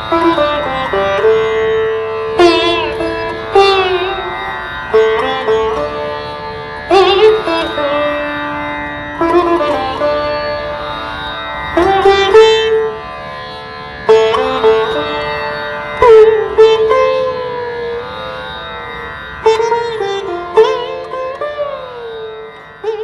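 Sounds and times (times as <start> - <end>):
plucked string instrument: 0.0 - 23.0.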